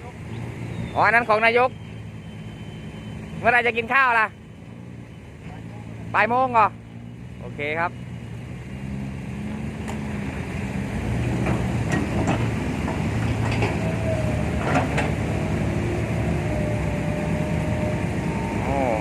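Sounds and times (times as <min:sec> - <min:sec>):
heavy diesel machinery running: 0:00.0 - 0:19.0
metallic clanks and knocks: 0:11.2 - 0:13.8.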